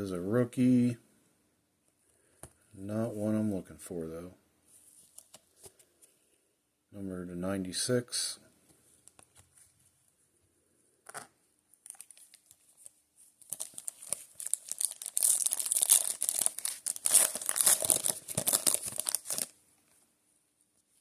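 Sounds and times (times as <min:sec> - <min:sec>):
foil wrapper tearing and crinkling: 0:11.8 - 0:19.6.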